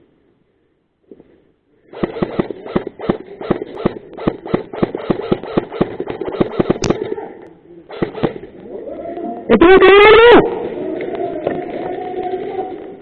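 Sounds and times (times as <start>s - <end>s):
airsoft guns firing: 1.9s - 7.2s, 7.9s - 8.6s.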